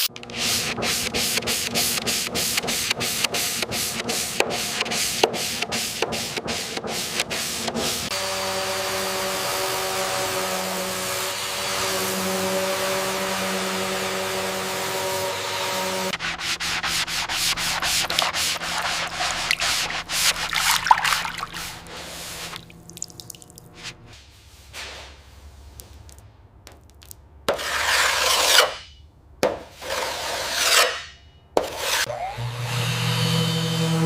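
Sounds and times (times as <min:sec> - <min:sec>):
sanding strokes: 0:00.3 - 0:22.6, 0:31.6 - 0:32.1.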